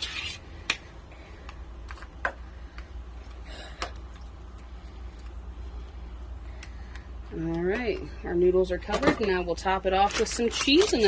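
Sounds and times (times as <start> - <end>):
utensil scraping pot: 0.0 - 0.5
low steady hum: 0.0 - 11.0.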